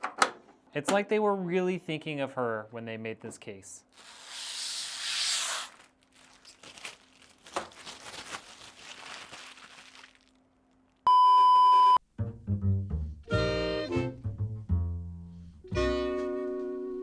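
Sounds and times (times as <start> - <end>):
plastic wrapping crinkling: 3.9 - 11.1.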